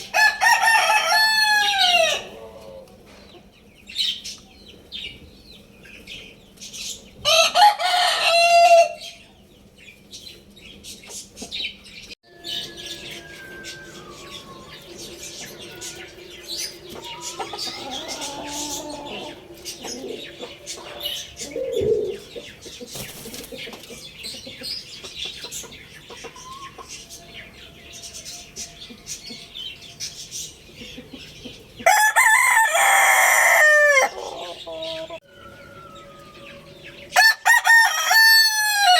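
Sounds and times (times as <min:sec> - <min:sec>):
rooster crowing: 0:00.0 - 0:02.8, 0:07.2 - 0:09.1, 0:12.3 - 0:21.7, 0:31.8 - 0:38.9
small birds chirping: 0:00.0 - 0:37.3
chickens clucking: 0:00.0 - 0:38.9.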